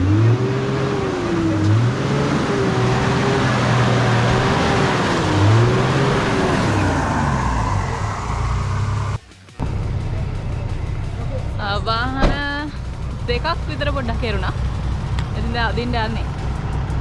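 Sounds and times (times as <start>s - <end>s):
tyres through mud: 0.0s - 10.1s
engine revving: 0.0s - 17.0s.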